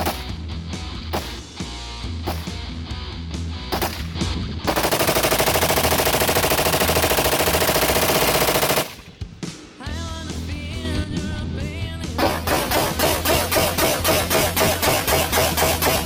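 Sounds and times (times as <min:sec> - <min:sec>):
background music with bass: 0:00.0 - 0:05.0, 0:08.4 - 0:16.0
sharp gunshots: 0:01.1 - 0:01.4, 0:02.2 - 0:02.6, 0:03.7 - 0:04.1, 0:04.7 - 0:09.2, 0:12.2 - 0:16.0
automatic gunfire: 0:04.7 - 0:09.1, 0:12.2 - 0:16.0.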